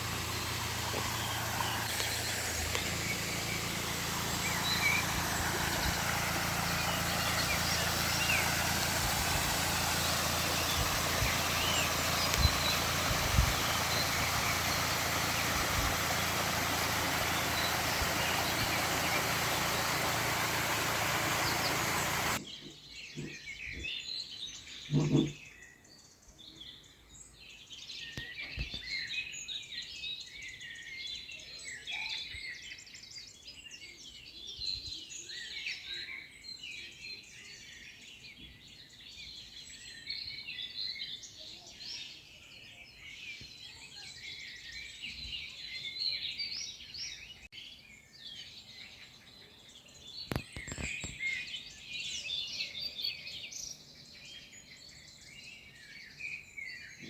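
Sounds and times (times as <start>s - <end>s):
small birds chirping: 0.0s - 23.8s, 40.6s - 57.0s.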